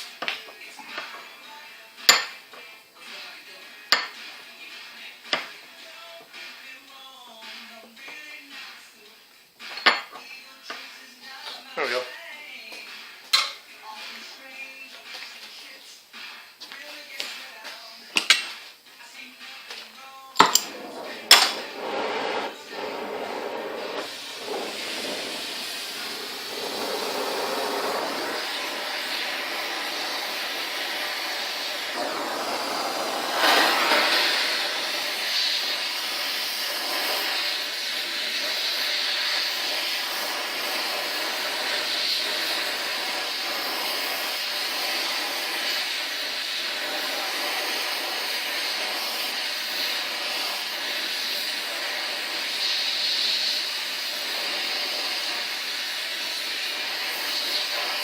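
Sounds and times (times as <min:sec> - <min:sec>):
gas torch flame hissing: 0:00.0 - 0:18.9, 0:19.8 - 0:58.0.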